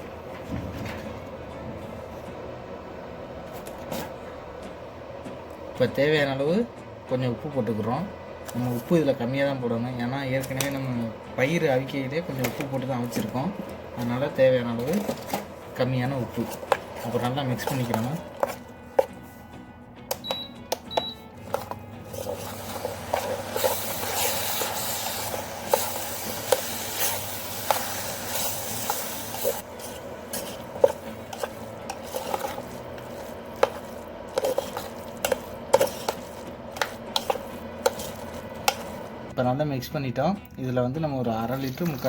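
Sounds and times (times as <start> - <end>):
masala sizzling: 7.8 - 19.6, 21.2 - 39.3
spoon scraping a pan: 14.8 - 19.3, 21.4 - 39.3.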